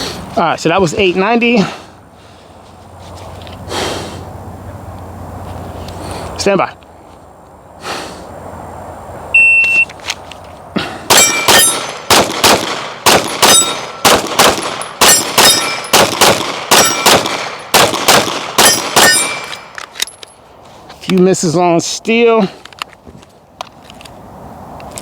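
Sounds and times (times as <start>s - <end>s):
shot timer beep: 9.4s - 9.9s
steel targets ringing: 11.1s - 12.1s, 13.3s - 14.1s, 14.7s - 16.0s, 16.7s - 17.7s, 18.6s - 19.8s
pistol shots in quick pairs: 11.1s - 19.7s.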